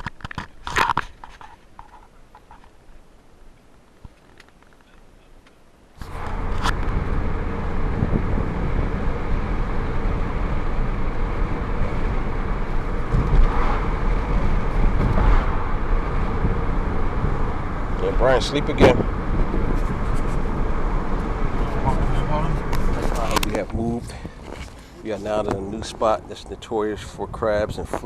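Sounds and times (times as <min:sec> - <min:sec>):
outboard motor running: 0:06.0 - 0:23.6.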